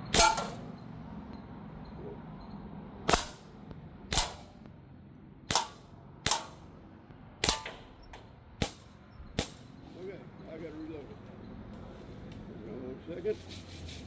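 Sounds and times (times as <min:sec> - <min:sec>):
bb rifle shots cracking: 0:00.0 - 0:00.8, 0:03.1 - 0:04.7, 0:05.5 - 0:06.8, 0:07.4 - 0:09.8.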